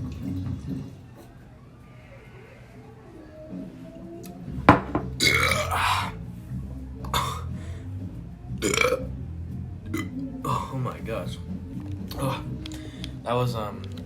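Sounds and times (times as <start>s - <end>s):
person burping loudly: 5.2s - 6.1s, 8.6s - 9.0s, 9.9s - 10.7s.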